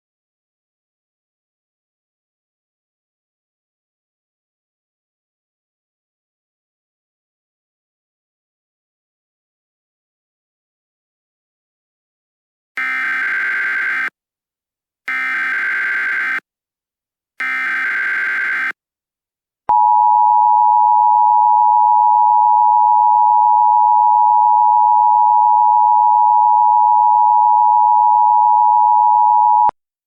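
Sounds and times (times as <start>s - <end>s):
buzzy warbling data bursts: 12.8s - 14.1s
loud steady dual tone: 12.8s - 14.1s, 15.1s - 16.4s, 17.4s - 18.8s, 19.7s - 29.8s.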